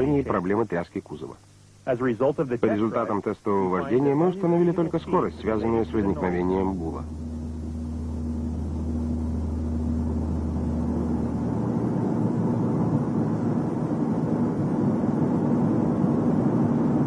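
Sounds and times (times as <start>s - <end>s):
low booming drone: 4.1s - 17.0s.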